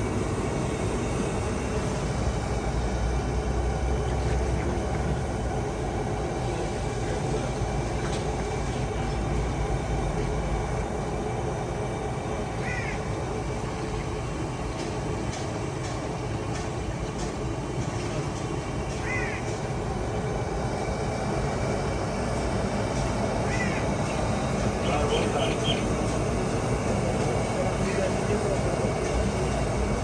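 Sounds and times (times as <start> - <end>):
street background rumble: 0.0 - 30.0
crow cawing: 12.6 - 13.1, 19.0 - 19.5, 23.4 - 23.9.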